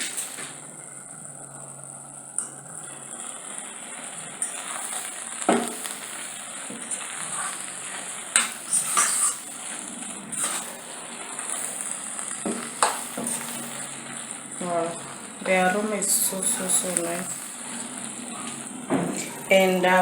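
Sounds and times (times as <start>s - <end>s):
noodles sizzling in a pot: 0.0s - 20.0s
utensil scraping and knocking pot: 4.4s - 14.2s.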